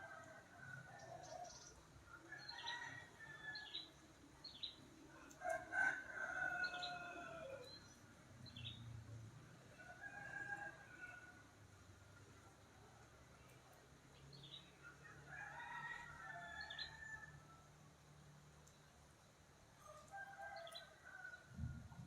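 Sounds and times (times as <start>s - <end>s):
faint rain hiss: 0.0s - 22.0s
rooster crowing: 5.4s - 7.7s, 15.0s - 17.6s, 19.8s - 22.0s.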